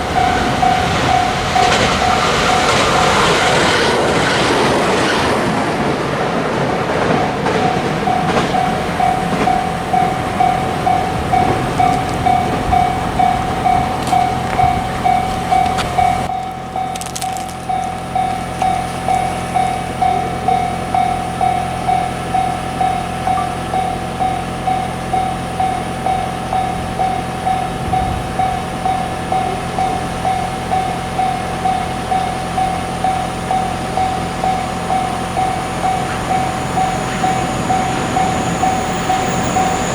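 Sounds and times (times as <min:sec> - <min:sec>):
level crossing warning bell: 0:00.0 - 0:39.9
passing train: 0:00.0 - 0:39.9.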